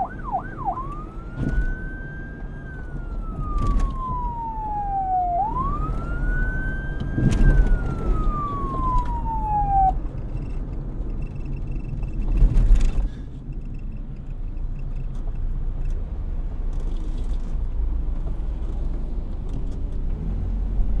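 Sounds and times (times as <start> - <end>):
police siren wailing: 0.0 - 10.1
road traffic rumble: 0.0 - 21.0.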